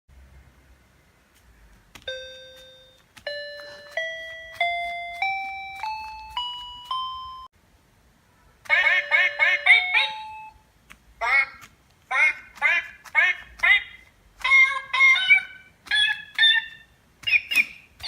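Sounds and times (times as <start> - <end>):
electronic keyboard scale: 2.1 - 7.5.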